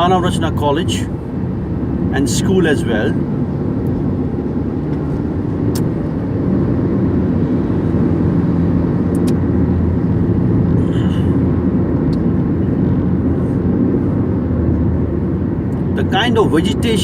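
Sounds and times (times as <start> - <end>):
car road and engine rumble: 0.0 - 17.0.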